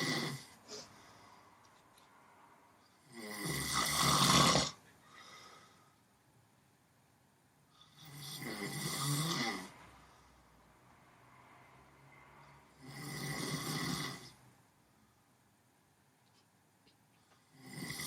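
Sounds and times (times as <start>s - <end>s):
person snoring: 0.0s - 0.9s, 3.0s - 5.6s, 7.8s - 9.8s, 12.8s - 14.4s, 17.4s - 18.0s.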